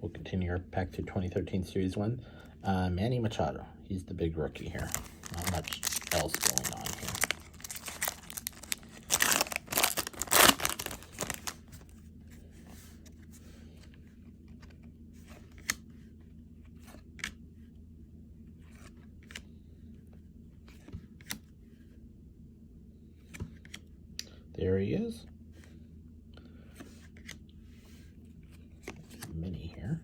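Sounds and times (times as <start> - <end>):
foil wrapper tearing and crinkling: 4.7 - 11.6.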